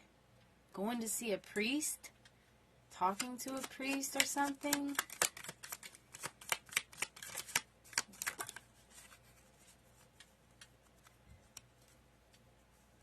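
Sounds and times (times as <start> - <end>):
cards being shuffled: 3.0 - 12.0.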